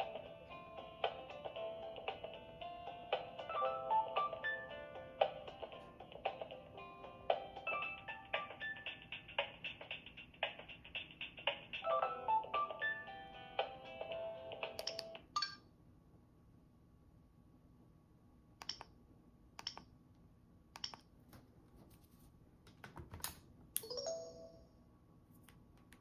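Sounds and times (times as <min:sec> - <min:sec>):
phone ringtone melody: 0:00.0 - 0:05.3, 0:06.8 - 0:09.2, 0:11.9 - 0:14.6, 0:23.9 - 0:24.7.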